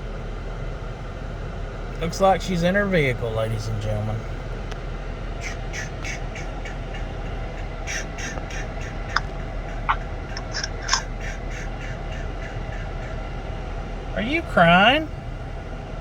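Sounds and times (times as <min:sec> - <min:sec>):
steady low hum: 0:00.0 - 0:16.0
birds chirping and squawking: 0:05.3 - 0:15.4.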